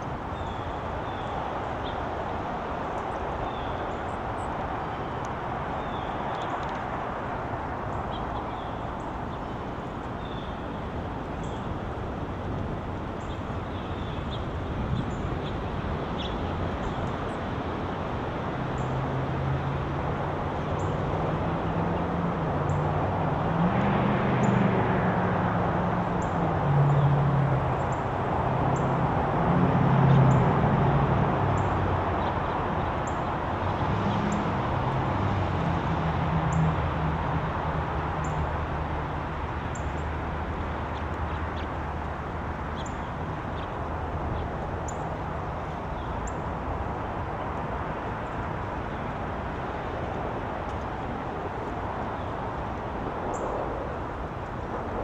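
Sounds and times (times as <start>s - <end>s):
traffic hum: 0.0s - 55.0s
vehicle engine low hum: 0.0s - 55.0s.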